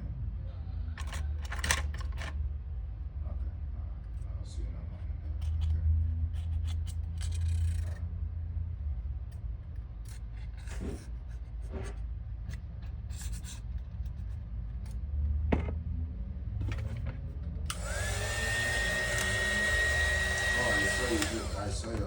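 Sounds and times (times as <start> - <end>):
handling clicks and scrapes: 5.4 - 8.0, 9.3 - 15.0
low hum: 15.8 - 22.0
blower motor whining: 17.7 - 22.0.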